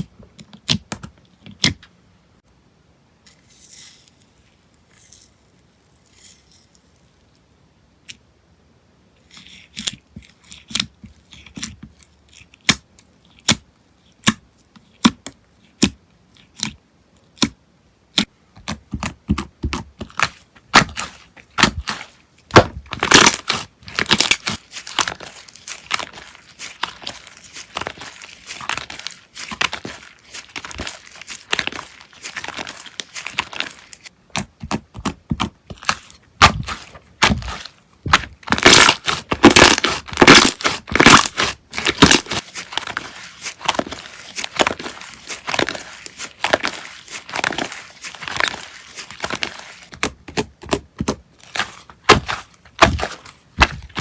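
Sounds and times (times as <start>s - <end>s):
slime popping and crackling: 18.1s - 54.0s.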